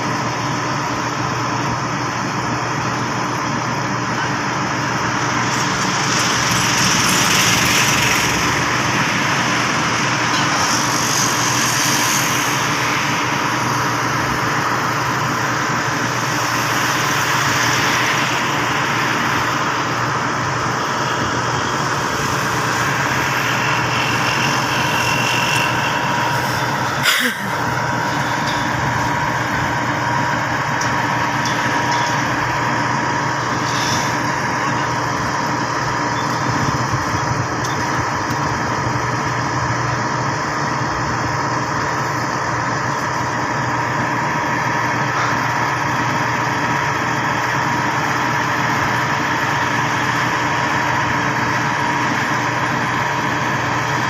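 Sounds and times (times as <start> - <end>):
concrete pump engine drone: 0.0 - 54.0.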